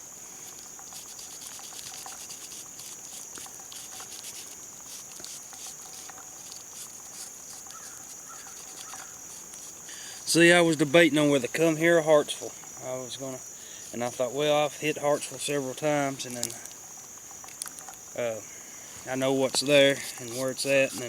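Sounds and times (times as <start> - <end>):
insect chorus buzzing: 0.0 - 21.0
small clicks and rustles: 0.4 - 10.3, 16.0 - 18.2, 18.9 - 21.0.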